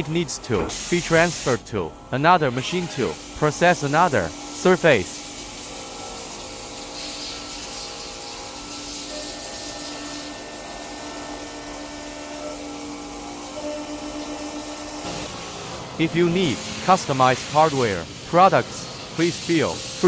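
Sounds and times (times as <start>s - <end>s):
hiss: 5.1s - 10.8s, 18.8s - 20.0s
high hiss: 16.0s - 20.0s.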